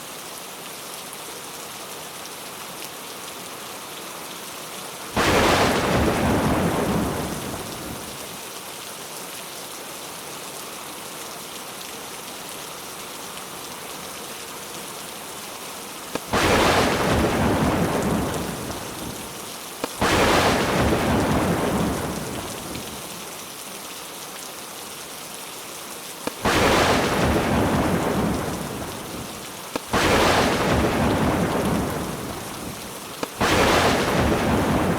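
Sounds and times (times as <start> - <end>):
heavy rain: 0.0 - 34.9
thunder claps rumbling: 5.2 - 8.3, 16.2 - 23.0, 26.3 - 34.9.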